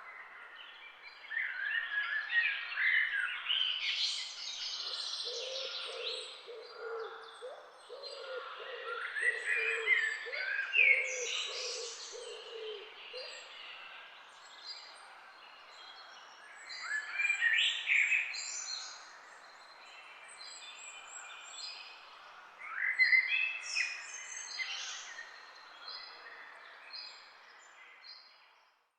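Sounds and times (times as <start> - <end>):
birds chirping and singing: 3.2 - 15.0.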